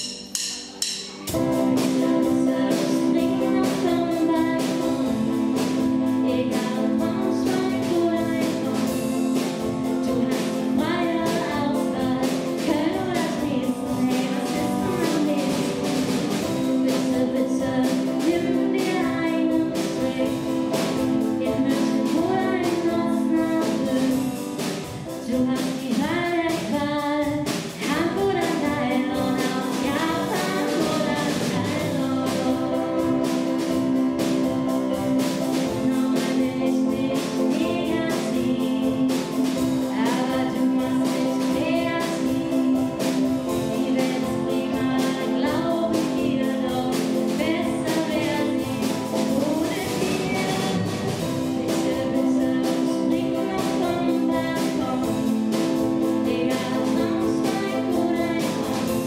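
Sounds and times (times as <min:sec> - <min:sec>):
pop song with drum beat: 0:00.0 - 0:59.0
voices singing: 0:27.7 - 0:59.0.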